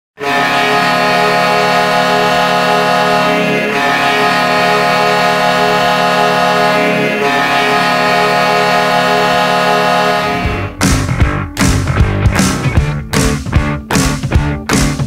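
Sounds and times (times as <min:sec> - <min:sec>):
deep goal horn blast: 0:00.2 - 0:11.5.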